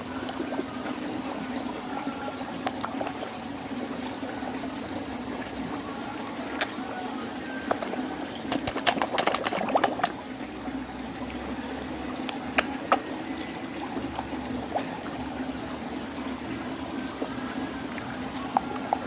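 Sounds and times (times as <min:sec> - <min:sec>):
steady water noise: 0:00.0 - 0:19.0
fish smacking pops at water surface: 0:07.7 - 0:10.2, 0:12.2 - 0:13.0.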